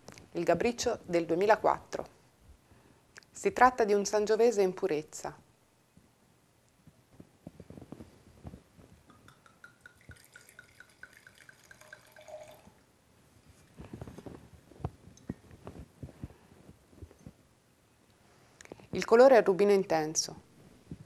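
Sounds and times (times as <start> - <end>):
glass clinking: 9.1 - 12.8
wine glugging into a glass: 9.2 - 12.8.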